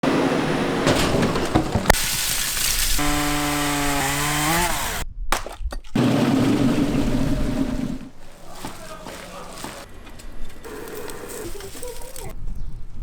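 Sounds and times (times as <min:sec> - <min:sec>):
chainsaw engine running: 0:03.0 - 0:05.0, 0:06.0 - 0:08.1.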